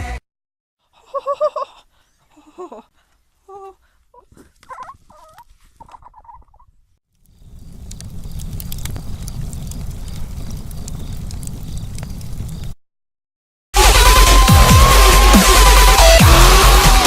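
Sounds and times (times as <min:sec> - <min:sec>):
short warbling gobble calls: 0:04.7 - 0:06.7.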